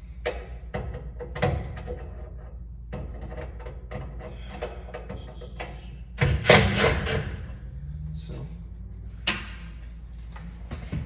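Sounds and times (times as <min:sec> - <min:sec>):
steady low hum: 0:00.0 - 0:11.0
metal panel parts clicking and rattling: 0:00.3 - 0:07.6.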